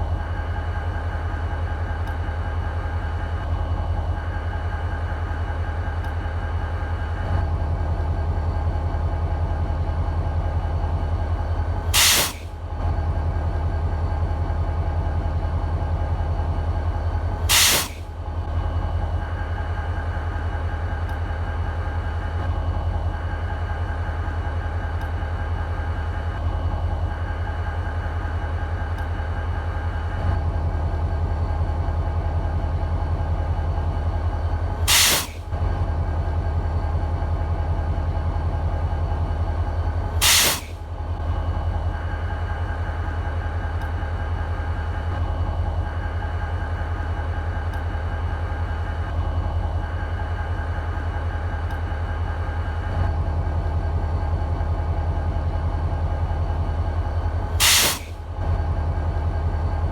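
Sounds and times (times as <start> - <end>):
air blast hissing: 12.0 - 12.5, 17.5 - 18.0, 34.8 - 35.5, 40.2 - 40.8, 57.6 - 58.2.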